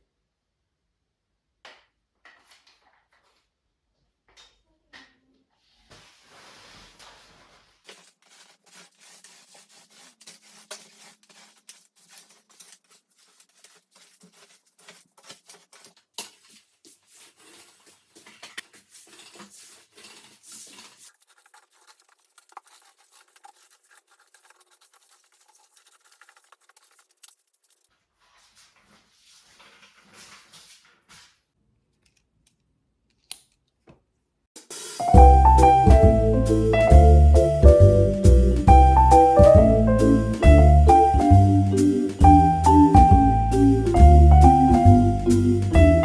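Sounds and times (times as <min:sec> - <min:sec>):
small objects scratching and clicking: 0:07.8 - 0:30.8.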